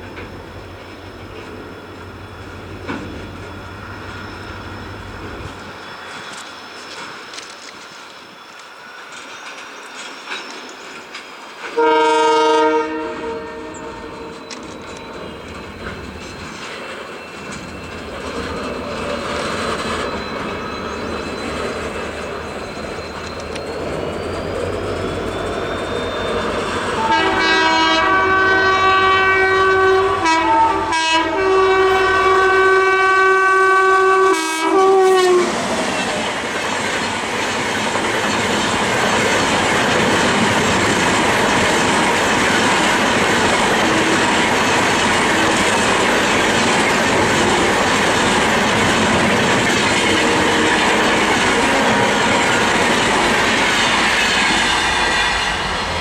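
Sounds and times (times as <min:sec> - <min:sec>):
train running noise: 0:00.0 - 0:56.0
locomotive horn blasts: 0:11.8 - 0:14.7, 0:26.7 - 0:35.6, 0:49.9 - 0:52.6.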